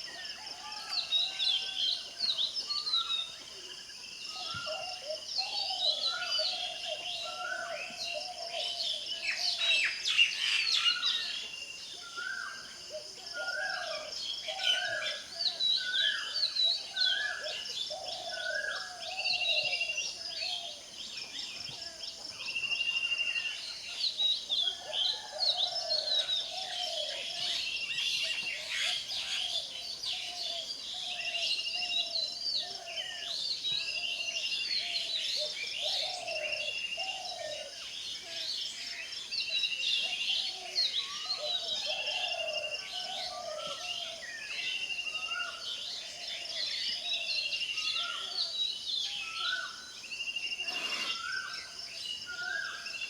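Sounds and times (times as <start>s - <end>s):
birds chirping and whistling: 50.5s - 52.8s.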